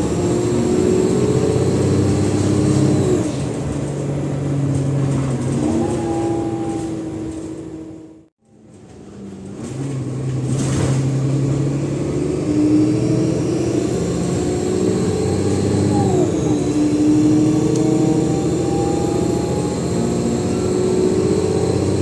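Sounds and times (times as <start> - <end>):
bus diesel engine pulling hard: 0.0 - 22.0.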